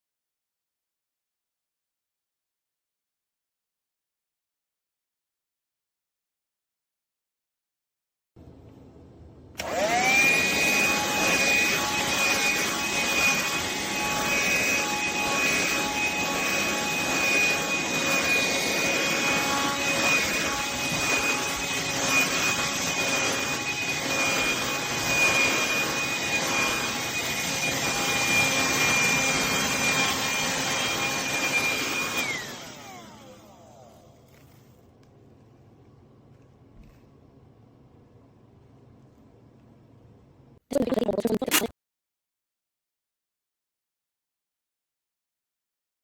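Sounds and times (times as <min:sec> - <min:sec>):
handheld vacuum whining: 0:09.6 - 0:34.7.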